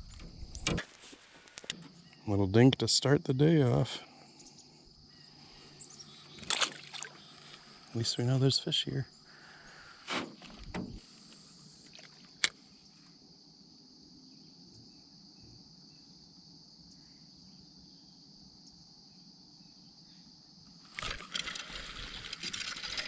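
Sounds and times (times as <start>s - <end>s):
crickets and insects chirping: 0.0s - 23.0s
sharp click: 0.5s - 1.8s.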